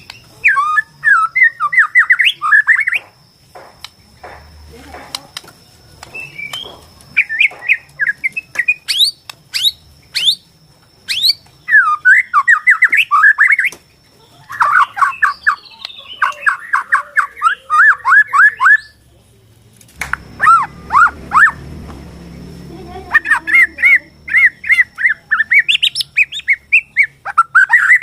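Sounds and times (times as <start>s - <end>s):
bird singing varied whistles: 0.0s - 3.1s, 6.1s - 13.8s, 14.5s - 19.0s, 20.1s - 21.6s, 23.1s - 28.0s.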